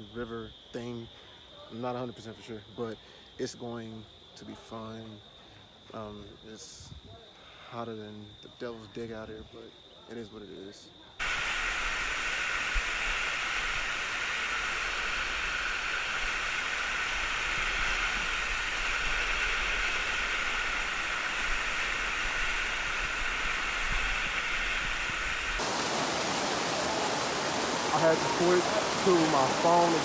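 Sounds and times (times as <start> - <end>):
waterfall rushing: 25.6 - 30.0.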